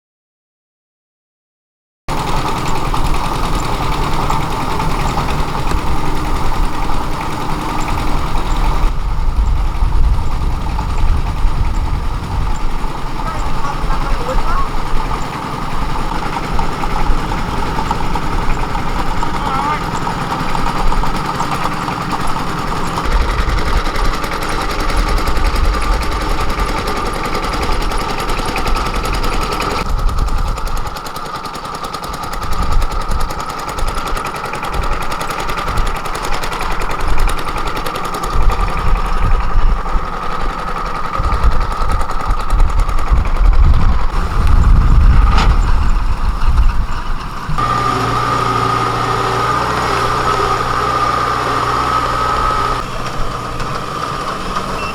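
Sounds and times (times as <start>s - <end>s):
engine running: 2.1s - 54.9s
irregular low rumble: 41.4s - 47.6s.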